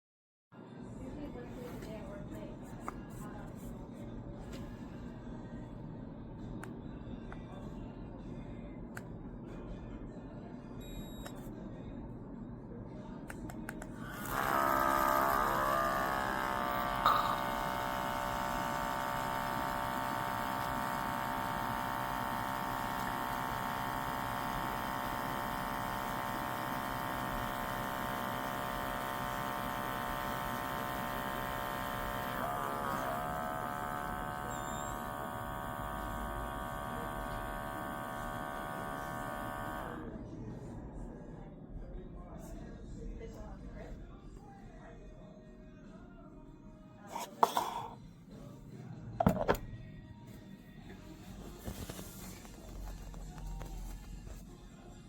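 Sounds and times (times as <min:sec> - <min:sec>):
espresso machine pump buzzing: 0:14.0 - 0:40.2.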